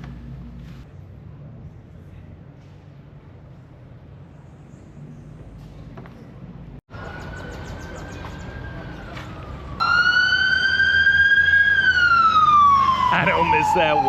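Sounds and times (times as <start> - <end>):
emergency vehicle siren wailing: 6.9 - 14.0.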